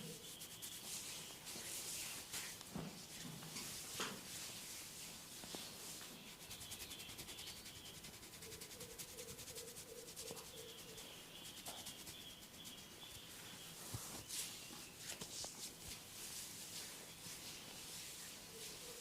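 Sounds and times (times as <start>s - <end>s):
fingertips scratching skin and hair: 5.5s - 13.3s.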